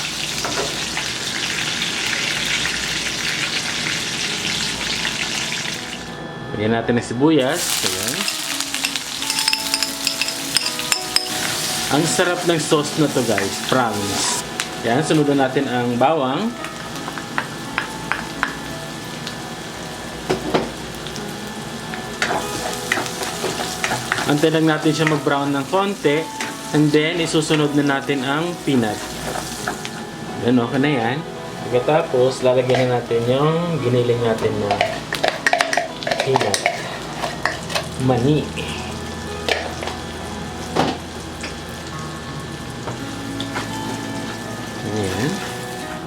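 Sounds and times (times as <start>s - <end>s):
chicken fat sizzling in a pan: 0.0s - 6.1s, 7.5s - 9.3s, 9.9s - 30.0s.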